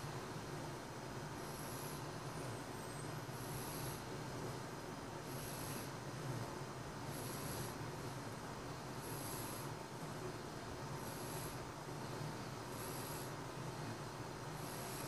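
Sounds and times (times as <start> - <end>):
steady low hum: 0.0 - 15.0
baby snoring: 7.1 - 7.8, 9.0 - 9.7, 11.0 - 11.6, 12.7 - 13.4, 14.6 - 15.0.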